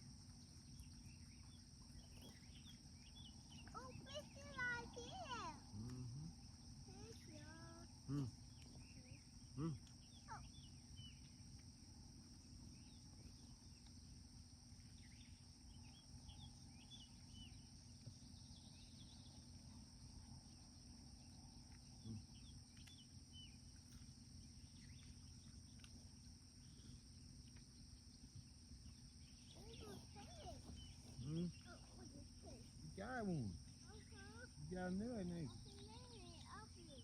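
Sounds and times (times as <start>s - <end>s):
bird chirps: 0.8s - 5.4s, 27.6s - 37.0s.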